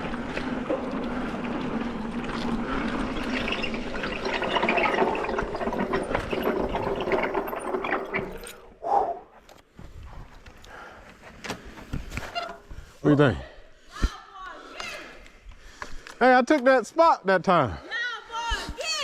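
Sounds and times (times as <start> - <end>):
bike tyres on dirt: 0.0 - 8.6
bike rattles and clicks: 0.0 - 8.7.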